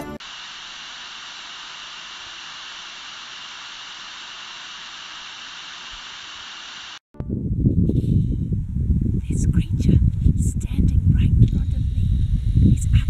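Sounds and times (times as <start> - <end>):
steady static hiss: 0.0 - 7.0.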